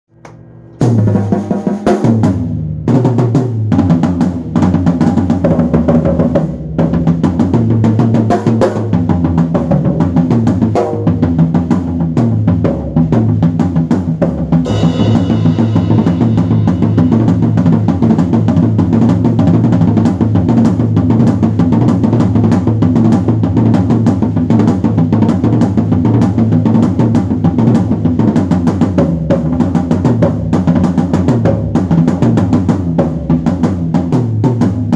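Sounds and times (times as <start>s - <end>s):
drum kit played busily: 0.2s - 34.9s
sustained low notes: 14.6s - 19.7s.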